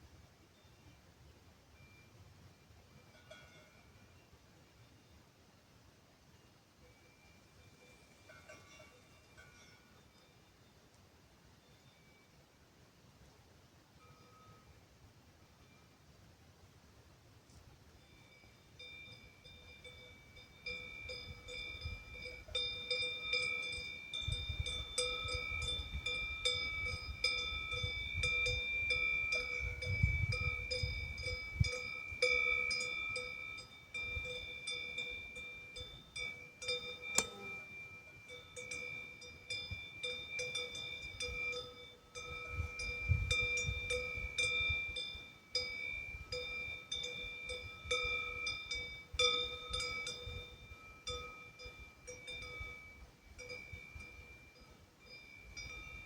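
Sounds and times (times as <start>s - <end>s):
cowbells clanking: 2.9s - 4.2s, 6.8s - 10.7s, 18.0s - 56.0s.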